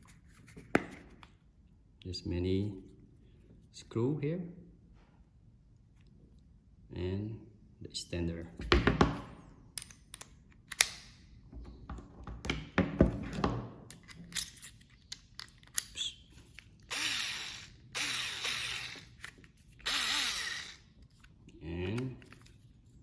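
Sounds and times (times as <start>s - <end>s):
electric screwdriver motor whirring: 16.9s - 20.9s.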